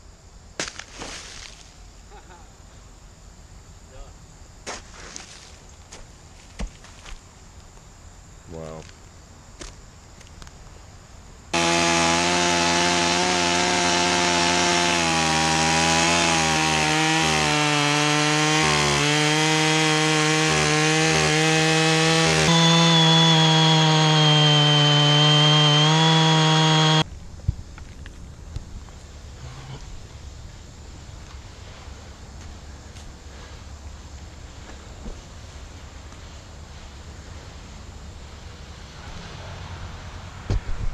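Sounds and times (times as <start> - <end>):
chainsaw cutting wood: 11.5 - 27.0.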